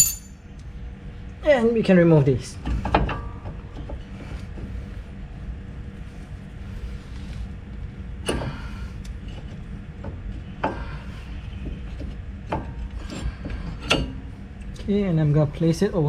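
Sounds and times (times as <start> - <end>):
metallic knocks and clinks: 0.0 - 0.4
steady low hum: 0.0 - 16.0.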